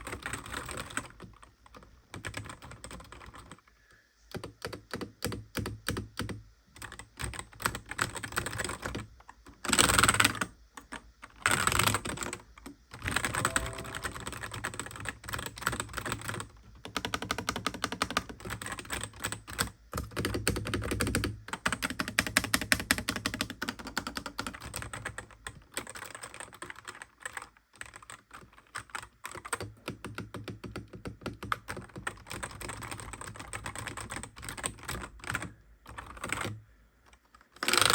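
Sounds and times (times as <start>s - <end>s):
keyboard typing clicks: 13.1s - 15.1s.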